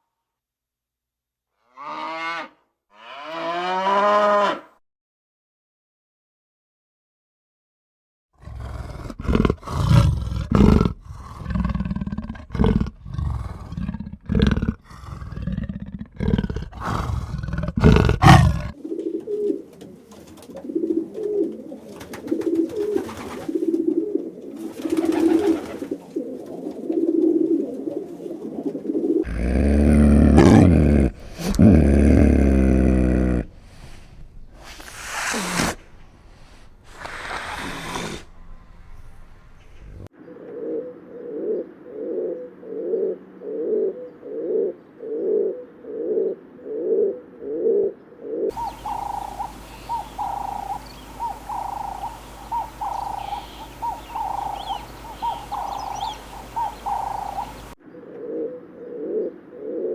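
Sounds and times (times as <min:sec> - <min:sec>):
buffalo grunting and bellowing: 0:08.4 - 0:18.8, 0:29.2 - 0:40.1, 0:48.5 - 0:57.8.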